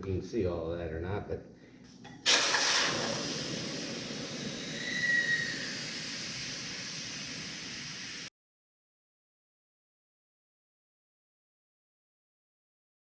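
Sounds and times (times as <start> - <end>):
rushing air hiss: 2.2 - 8.3
high whistle: 2.3 - 8.3.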